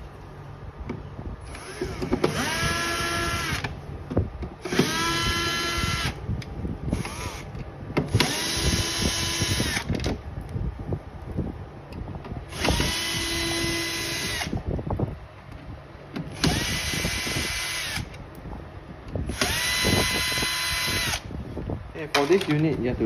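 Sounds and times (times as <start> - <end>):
electric screwdriver whine: 1.5 - 3.7, 4.6 - 6.2, 6.9 - 7.5, 8.1 - 10.0, 12.5 - 14.6, 16.3 - 18.2, 19.3 - 21.3.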